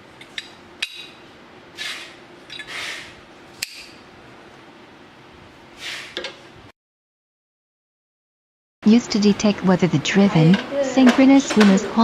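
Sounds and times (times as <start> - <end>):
faint steady hum: 8.8 - 12.0.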